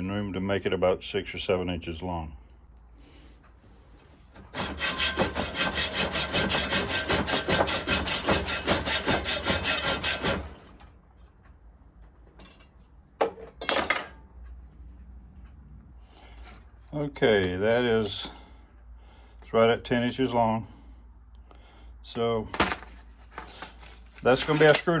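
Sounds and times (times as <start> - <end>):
hacksaw cutting steel rod: 4.4 - 10.9, 24.2 - 25.0.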